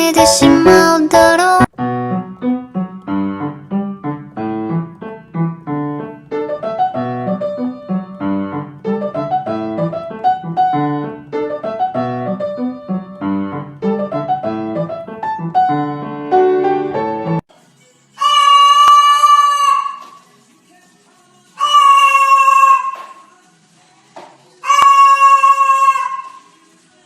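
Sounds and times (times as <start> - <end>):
piano music: 0.0 - 17.4.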